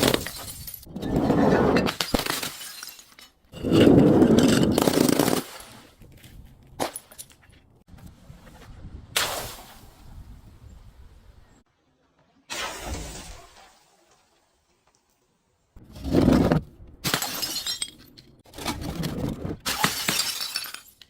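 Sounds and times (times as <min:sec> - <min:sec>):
glass bottles breaking and crunching: 0:00.0 - 0:00.9, 0:01.9 - 0:03.5, 0:04.3 - 0:05.6, 0:17.0 - 0:21.0
sharp crack: 0:09.2 - 0:09.9.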